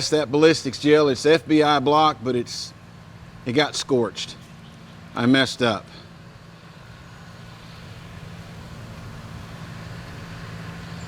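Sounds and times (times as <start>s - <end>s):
distant engine hum: 0.0s - 11.0s.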